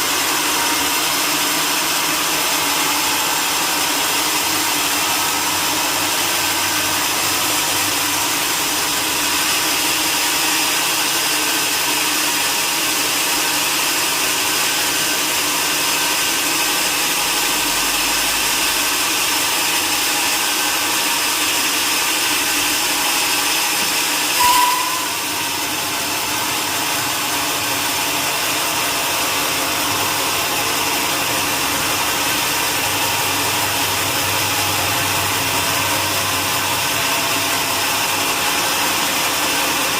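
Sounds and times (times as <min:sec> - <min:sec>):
sawmill machinery running: 0:00.0 - 0:39.9
machinery squeal: 0:24.4 - 0:25.6.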